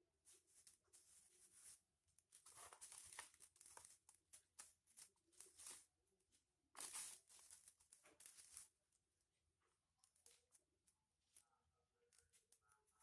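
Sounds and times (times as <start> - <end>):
foil paper crinkling: 0.4 - 5.9, 6.8 - 8.8.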